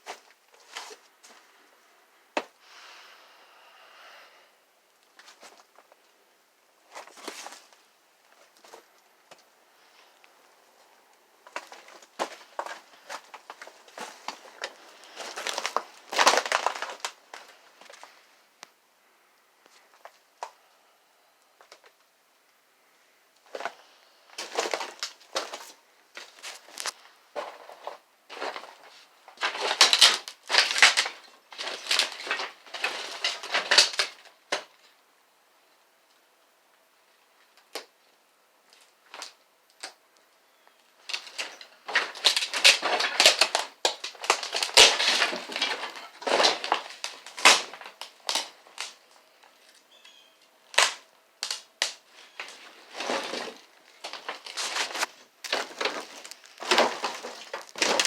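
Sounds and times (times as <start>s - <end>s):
material cracking and crunching: 11.4s - 18.7s, 23.4s - 34.9s, 41.0s - 58.0s.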